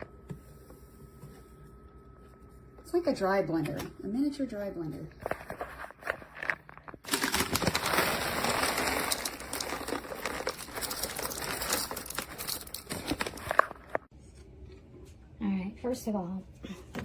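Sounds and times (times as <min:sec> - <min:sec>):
coffee grinder grinding beans: 0:07.0 - 0:14.0.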